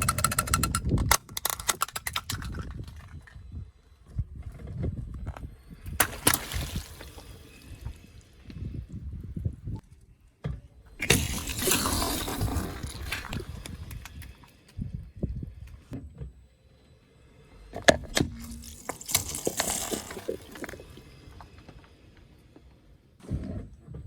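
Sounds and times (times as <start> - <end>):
objects crushed under car tyre: 11.0 - 14.4, 17.8 - 21.0.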